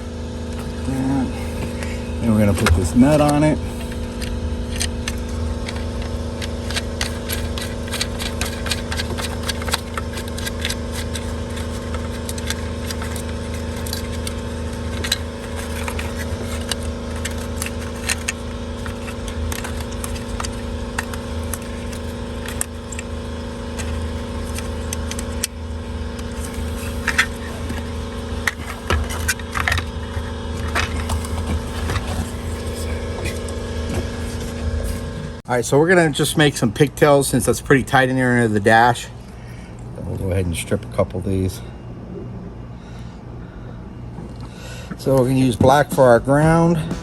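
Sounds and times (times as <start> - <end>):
steady low hum: 0.0 - 47.0
small metal parts clicking: 3.8 - 29.9.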